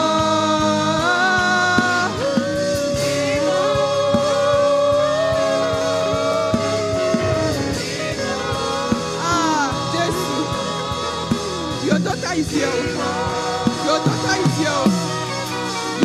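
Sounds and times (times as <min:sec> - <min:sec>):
band with guitar: 0:00.0 - 0:16.0
steady drum beat: 0:00.0 - 0:16.0
person singing sustained notes: 0:02.3 - 0:10.7.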